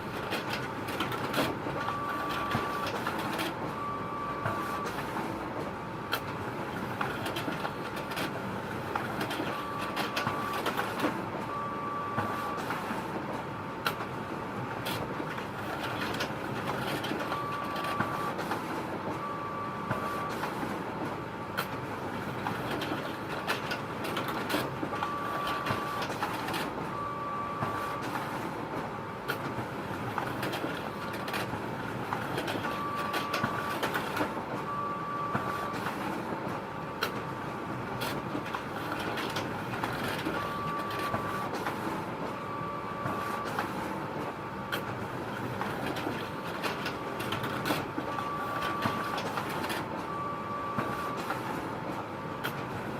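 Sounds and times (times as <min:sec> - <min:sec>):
photocopier running: 0:00.0 - 0:52.9.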